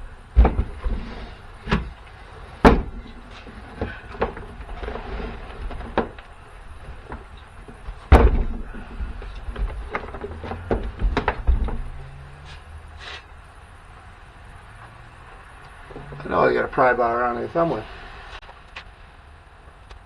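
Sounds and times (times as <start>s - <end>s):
hard objects knocking: 0.0s - 12.8s
loud bang: 2.6s - 12.6s.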